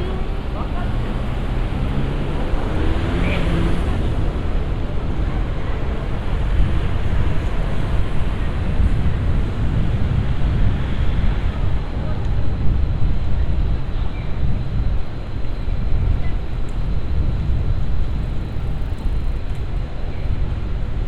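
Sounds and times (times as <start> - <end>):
faint voices: 0.0 - 9.8
crowd noise: 0.0 - 10.0
traffic rumble: 0.0 - 21.0.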